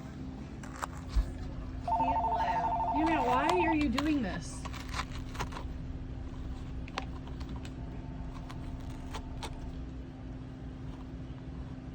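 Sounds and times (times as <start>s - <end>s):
steady low hum: 0.0s - 11.9s
cat scratching cardboard box: 4.6s - 5.7s.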